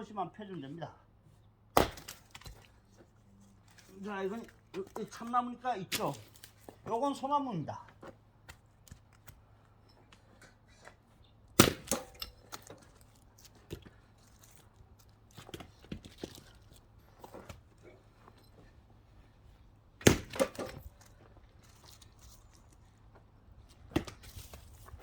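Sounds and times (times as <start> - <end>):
axe splitting wood: 1.7 - 2.8, 5.9 - 6.8, 11.6 - 17.7, 20.0 - 21.1, 23.8 - 25.0
wooden knocks of logs handled: 1.7 - 3.1, 15.1 - 18.7, 20.0 - 22.0, 23.8 - 25.0
split wood pieces clattering: 20.0 - 22.8.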